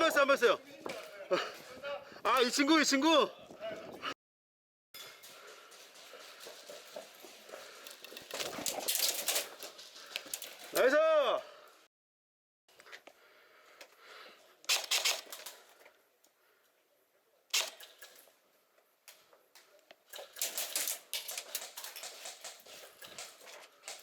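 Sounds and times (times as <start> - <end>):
airsoft guns firing: 14.7 - 15.6, 17.5 - 18.1.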